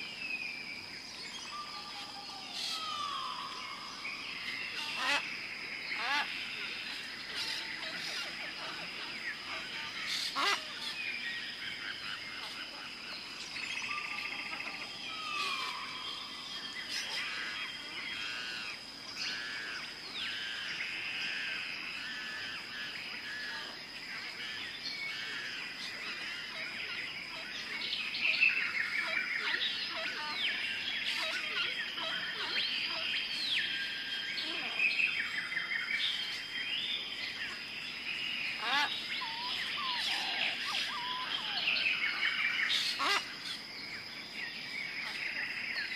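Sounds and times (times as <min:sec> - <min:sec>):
birds calling and chirping: 0:00.0 - 0:45.9.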